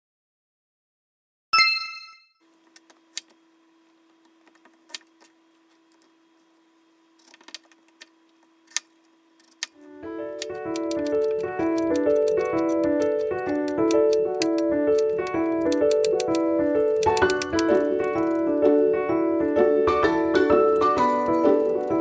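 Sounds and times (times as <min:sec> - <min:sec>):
ringing chime: 0:01.6 - 0:02.2
piano background music: 0:09.8 - 0:22.0
small objects clicking and knocking: 0:10.4 - 0:18.4.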